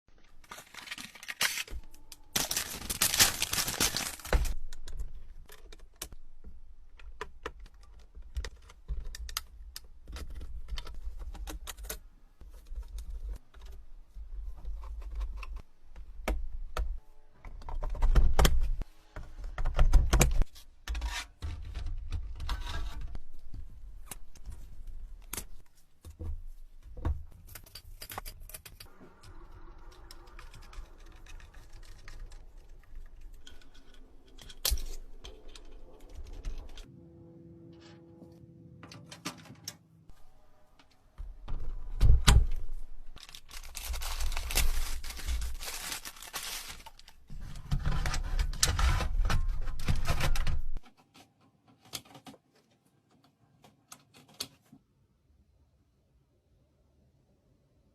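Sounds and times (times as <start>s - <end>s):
packaging rustling: 0.2s - 4.6s, 42.0s - 47.4s.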